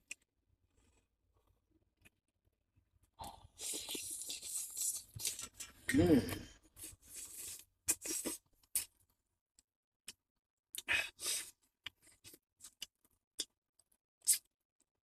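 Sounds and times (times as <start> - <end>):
person eating clicks and scrapes: 3.6 - 5.8, 6.8 - 8.9, 10.8 - 14.5.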